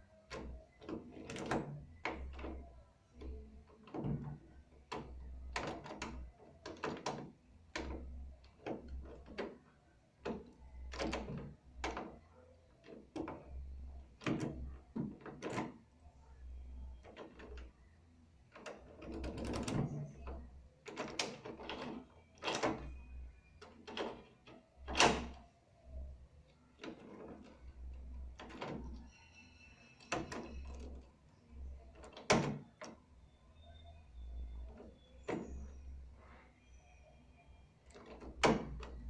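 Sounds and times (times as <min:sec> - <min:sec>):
key turning in door lock: 0:00.2 - 0:09.6, 0:10.2 - 0:15.8, 0:16.9 - 0:17.7, 0:18.5 - 0:25.4, 0:26.5 - 0:29.1, 0:30.0 - 0:33.1, 0:37.8 - 0:39.0.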